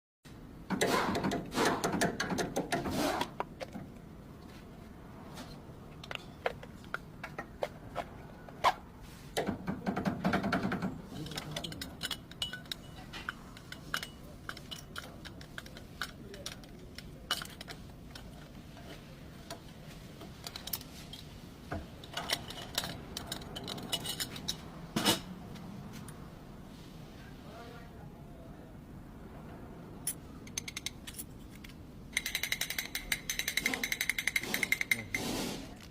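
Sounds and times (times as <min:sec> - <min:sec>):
metal tools clinking: 0:11.2 - 0:18.6, 0:20.4 - 0:21.3, 0:22.0 - 0:25.2, 0:30.0 - 0:35.3.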